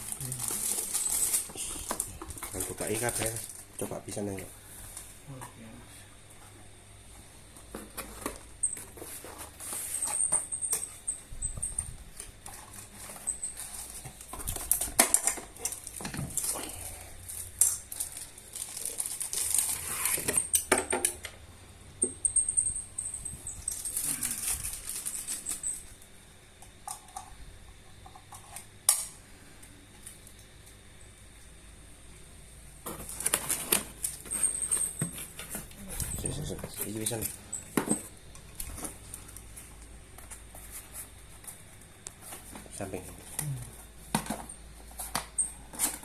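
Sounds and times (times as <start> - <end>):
packaging rustling: 0.0 - 3.7, 12.5 - 20.5, 23.6 - 25.9
clicks and knocks of parts: 14.1 - 16.6.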